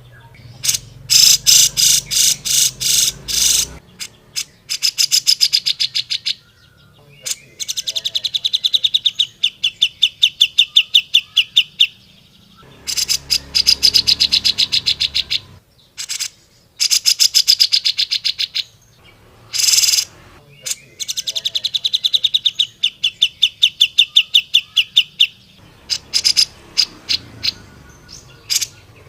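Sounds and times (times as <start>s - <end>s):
bird singing rattling trills: 0.0s - 29.0s.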